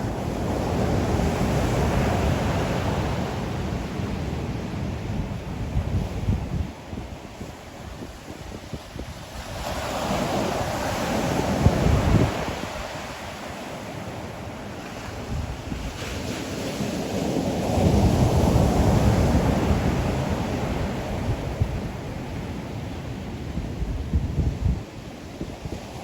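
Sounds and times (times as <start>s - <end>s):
wind buffeting microphone: 0.0s - 26.0s
ocean waves breaking: 7.0s - 23.6s.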